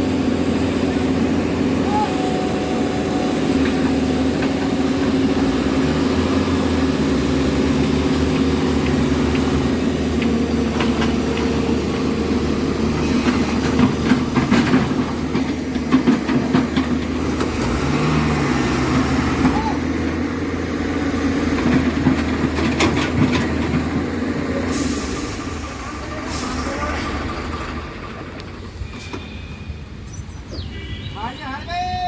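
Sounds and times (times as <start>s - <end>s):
heavy diesel engines under load: 0.0s - 32.0s.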